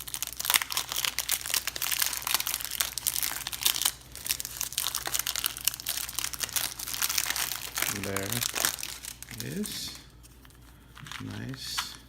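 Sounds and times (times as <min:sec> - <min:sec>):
packaging crinkling: 0:00.0 - 0:12.0.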